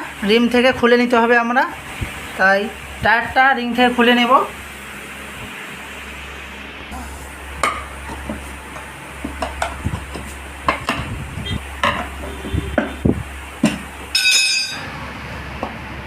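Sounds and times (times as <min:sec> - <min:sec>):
metallic ring: 0:14.1 - 0:14.9.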